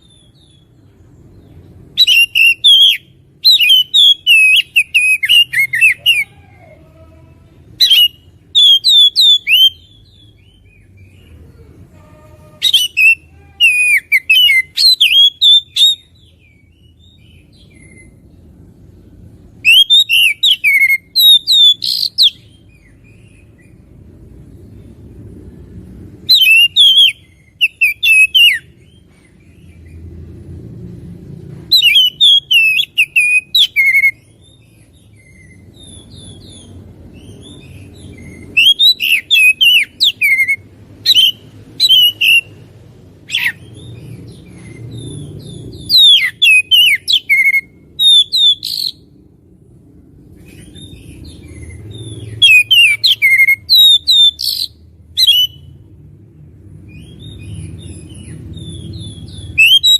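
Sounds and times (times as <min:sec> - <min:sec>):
bird singing whistled notes: 0:01.9 - 0:06.3, 0:07.8 - 0:11.2, 0:12.6 - 0:18.3, 0:19.5 - 0:23.8, 0:26.2 - 0:29.0, 0:31.7 - 0:42.6, 0:43.3 - 0:49.1, 0:50.5 - 0:55.8, 0:56.9 - 0:59.9
faint low rumble: 0:15.6 - 0:59.6.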